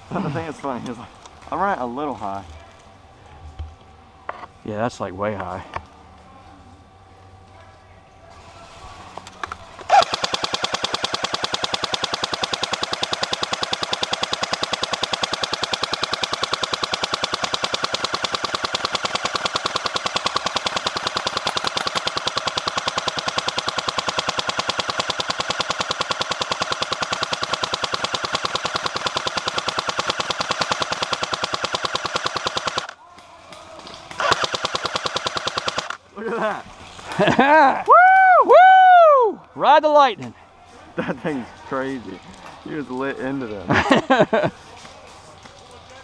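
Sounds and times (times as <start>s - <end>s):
airsoft gun full-auto firing: 9.9s - 33.0s, 34.1s - 36.0s.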